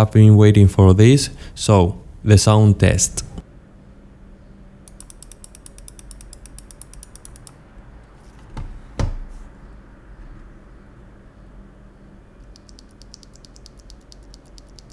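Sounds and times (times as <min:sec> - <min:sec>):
volume knob ratchet clicks: 0:04.9 - 0:07.5
dull thumps: 0:08.4 - 0:09.4.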